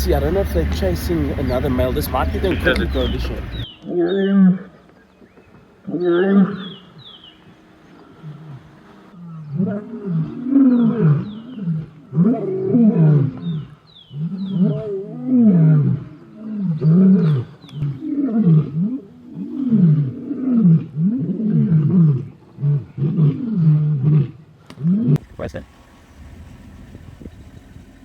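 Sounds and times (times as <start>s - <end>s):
lions roaring and grunting: 5.8s - 7.2s, 8.2s - 25.2s.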